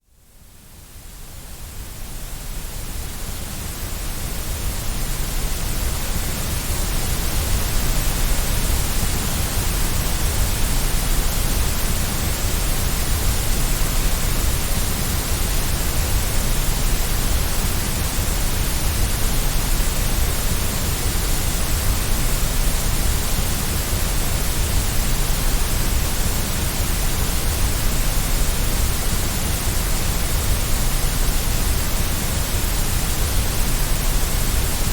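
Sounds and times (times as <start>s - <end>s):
white noise hiss: 0.0s - 34.9s.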